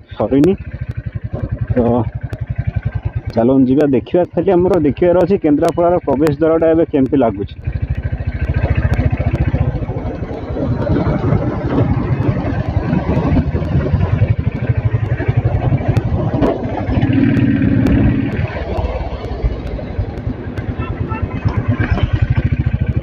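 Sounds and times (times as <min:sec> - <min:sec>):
motorcycle engine running: 0:00.0 - 0:23.0
steady hum: 0:07.1 - 0:23.0.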